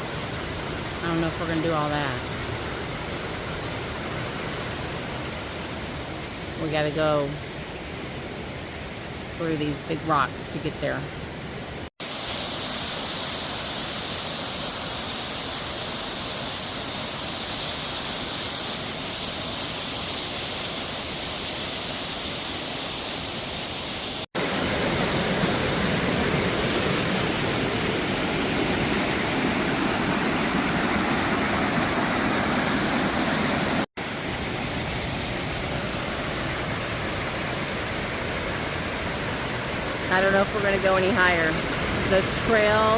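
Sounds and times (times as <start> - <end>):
waterfall rushing: 12.0 - 42.9.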